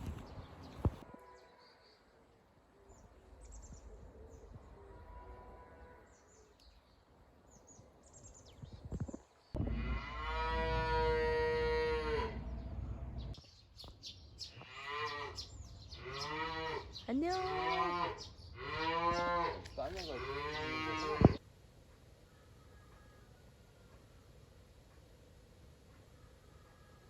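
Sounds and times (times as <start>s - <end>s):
cow mooing: 9.7s - 12.6s, 16.0s - 21.4s.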